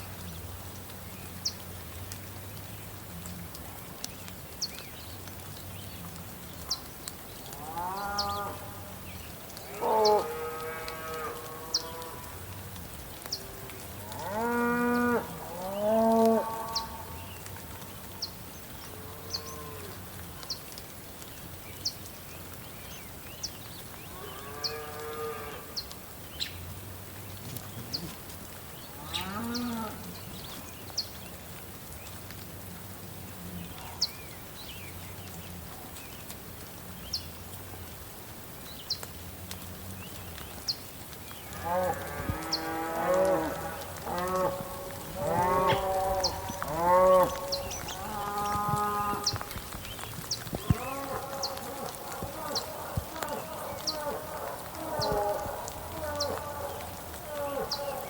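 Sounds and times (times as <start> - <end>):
rain hissing: 0.0 - 58.0
cattle mooing: 41.6 - 49.4.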